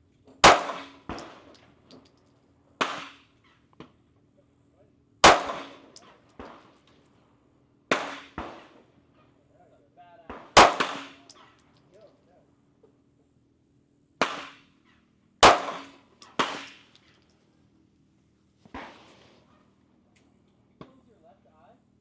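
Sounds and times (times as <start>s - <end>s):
pistol shots with echo: 0.4s - 1.5s, 5.2s - 6.6s, 10.3s - 11.5s, 15.4s - 16.9s
faint distant gunshots: 5.2s - 6.6s, 10.3s - 11.3s, 15.4s - 16.9s.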